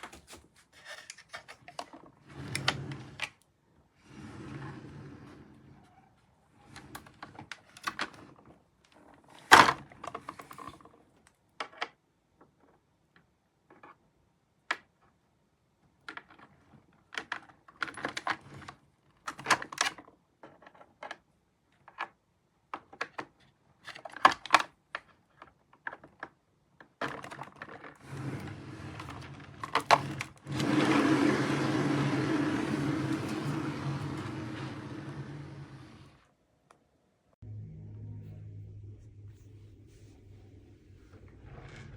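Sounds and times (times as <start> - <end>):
steady rushing with low hum: 37.5 - 41.9.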